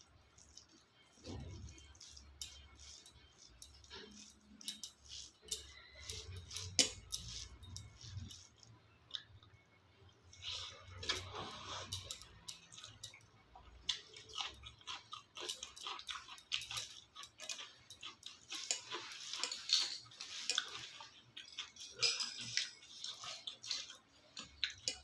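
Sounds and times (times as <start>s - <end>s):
person chewing: 0.0s - 25.0s.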